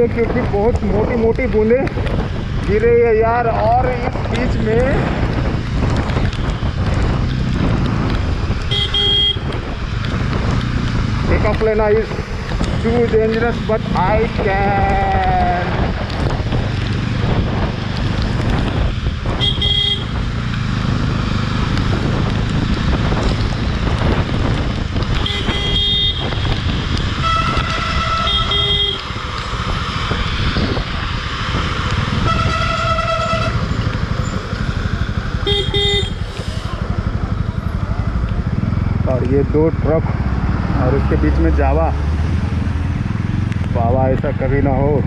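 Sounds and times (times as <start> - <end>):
motorcycle engine rumble: 0.0 - 45.0
wind: 0.0 - 45.0
vehicle horns honking: 8.7 - 9.5, 19.4 - 20.2, 25.2 - 26.6, 27.2 - 29.1, 32.2 - 33.7, 35.4 - 36.2.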